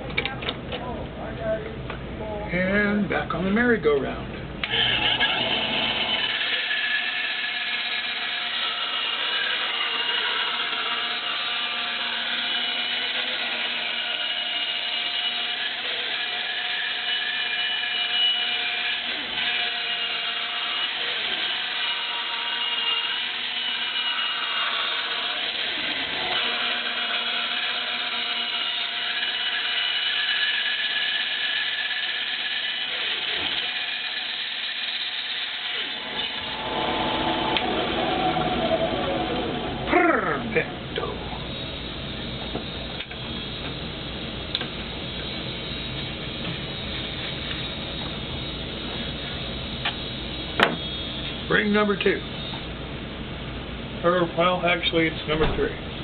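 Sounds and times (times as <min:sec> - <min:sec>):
power tool cutting wood: 0:04.6 - 0:40.0.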